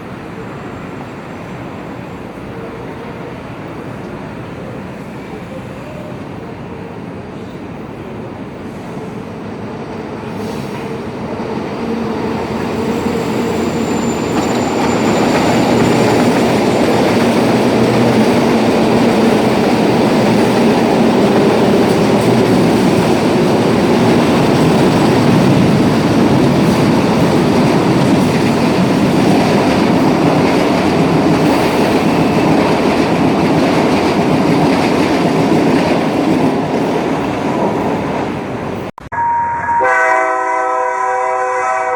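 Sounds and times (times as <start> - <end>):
electric train passing: 0.0 - 41.9.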